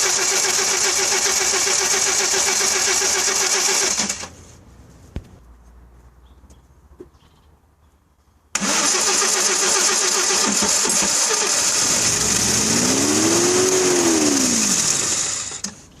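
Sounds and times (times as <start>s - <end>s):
car engine cranking and revving: 8.6s - 15.8s.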